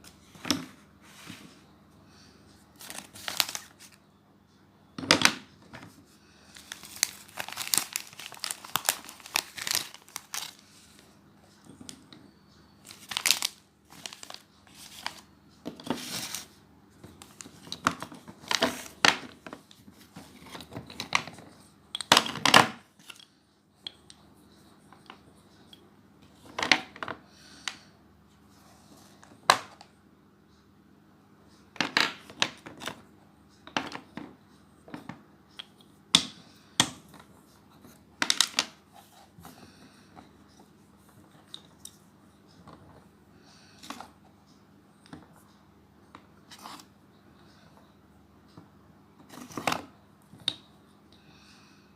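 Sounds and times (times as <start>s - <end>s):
packaging wrap crinkling and tearing: 2.8s - 3.9s, 6.6s - 10.6s, 12.9s - 15.2s.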